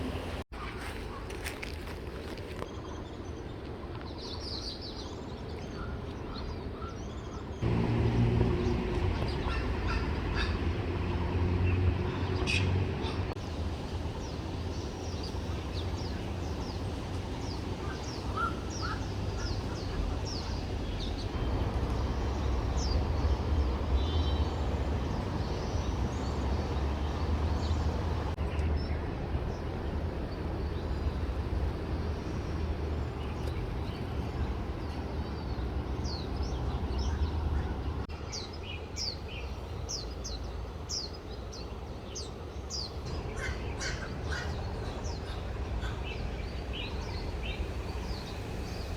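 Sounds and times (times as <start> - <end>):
small birds chirping: 14.0 - 48.9.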